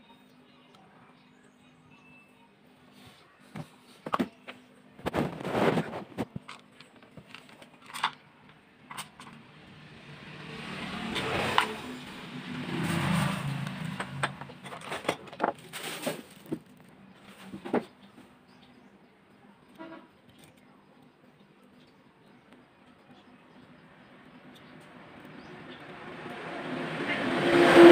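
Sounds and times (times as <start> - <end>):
vehicle engine passing by: 9.3 - 15.1, 23.6 - 27.9.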